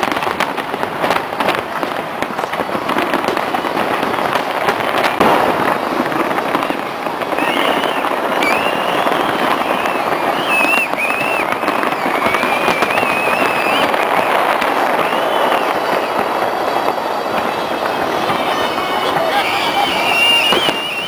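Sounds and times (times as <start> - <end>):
fireworks crackling and popping: 0.0 - 21.0
high wavering whistle: 7.3 - 16.3, 18.2 - 21.0.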